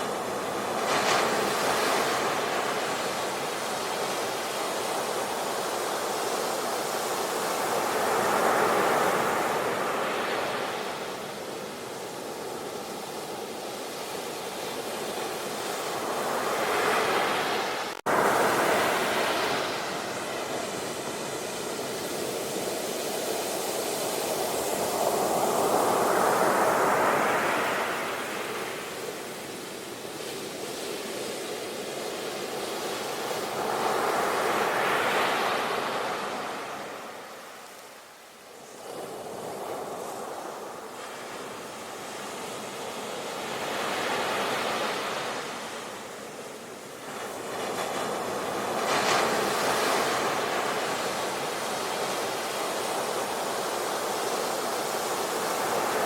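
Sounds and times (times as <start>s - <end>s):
ocean waves breaking: 0.0s - 29.6s.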